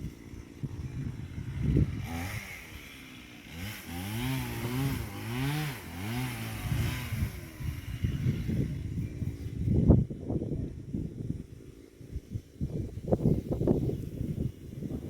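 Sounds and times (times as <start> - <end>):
small engine revving: 0.0 - 10.0.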